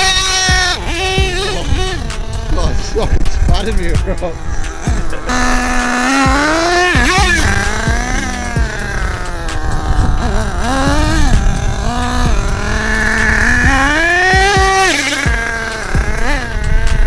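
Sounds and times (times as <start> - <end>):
small nitro engine revving: 0.0 - 17.0.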